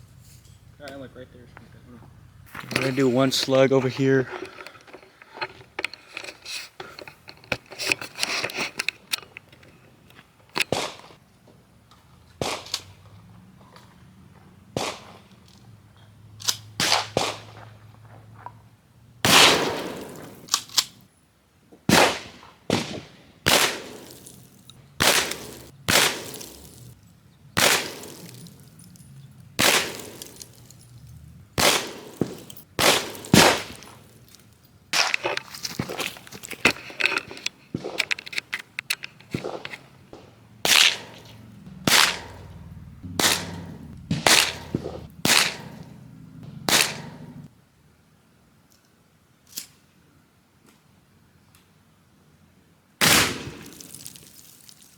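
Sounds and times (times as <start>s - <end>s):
gunshots at shooting range: 12.4s - 13.0s, 14.7s - 15.3s, 16.8s - 17.7s, 19.2s - 20.5s, 21.9s - 24.4s, 25.0s - 27.0s, 27.6s - 28.9s, 29.6s - 30.8s, 31.6s - 34.1s, 39.4s - 47.5s, 53.0s - 53.8s.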